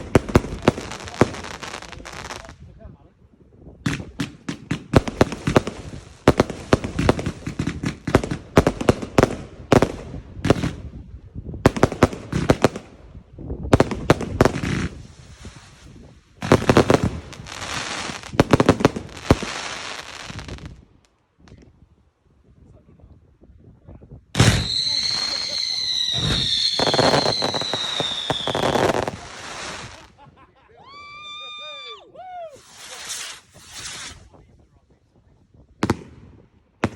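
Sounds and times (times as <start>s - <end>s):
firework crackling: 0.0s - 2.5s, 3.9s - 10.8s, 13.8s - 20.9s, 24.4s - 30.2s, 32.5s - 34.4s
firework volleys of sharp bangs: 3.8s - 11.0s, 24.4s - 30.1s, 32.6s - 34.4s, 35.7s - 36.9s.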